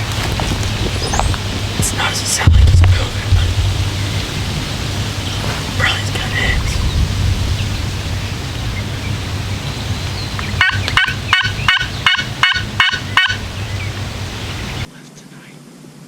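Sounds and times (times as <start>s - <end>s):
low rumble: 0.0s - 14.9s
turkey yelps: 8.4s - 14.9s.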